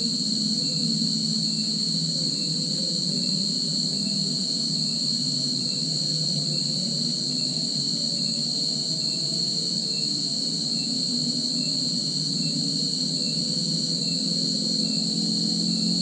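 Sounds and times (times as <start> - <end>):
shrill insects chorus: 0.0 - 16.0
low hum with wavering tones: 11.3 - 16.0.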